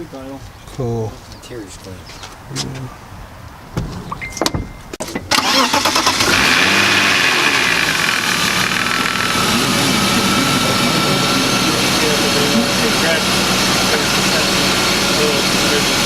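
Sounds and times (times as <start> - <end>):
car engine idling: 3.6 - 16.0
starter cranking: 5.2 - 9.4.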